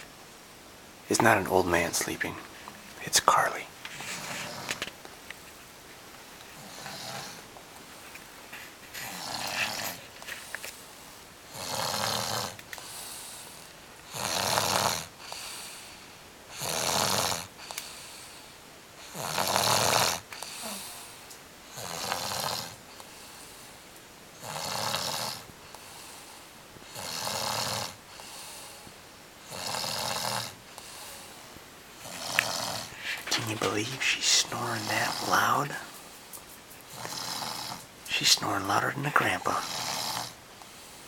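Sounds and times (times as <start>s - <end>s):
quiet breathing: 1.2s - 4.9s, 6.5s - 41.0s
baby snoring: 4.0s - 4.8s, 6.6s - 7.5s, 9.0s - 10.1s, 11.5s - 15.8s, 16.5s - 18.1s, 19.0s - 22.8s, 24.4s - 26.1s, 26.9s - 28.8s, 29.4s - 31.4s, 32.0s - 35.8s, 36.9s - 37.9s, 39.2s - 40.4s.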